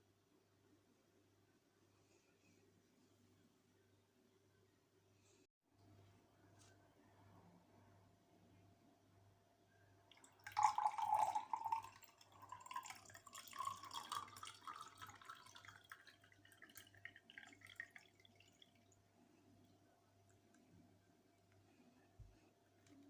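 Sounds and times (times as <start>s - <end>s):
liquid pouring and splashing: 10.1s - 19.1s
liquid trickling and dripping: 10.1s - 20.6s.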